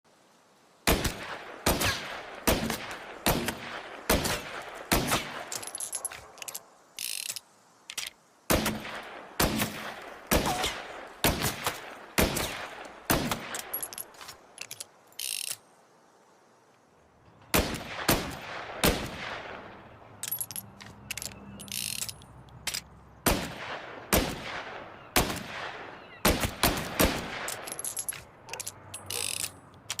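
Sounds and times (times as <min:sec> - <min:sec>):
revolver gunshots: 0:08.5 - 0:13.8, 0:23.2 - 0:27.8.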